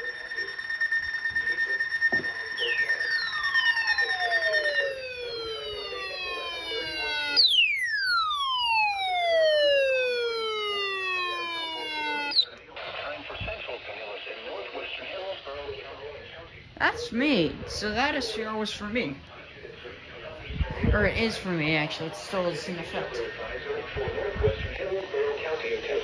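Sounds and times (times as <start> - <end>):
falling siren-like sweeps: 0.0 - 12.5, 21.2 - 26.0
steady high alarm tone: 0.0 - 12.6, 21.1 - 26.0.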